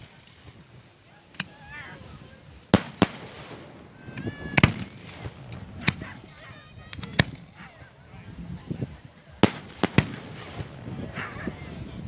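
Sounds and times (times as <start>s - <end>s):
fireworks bangs: 0.0s - 8.0s, 9.3s - 11.6s.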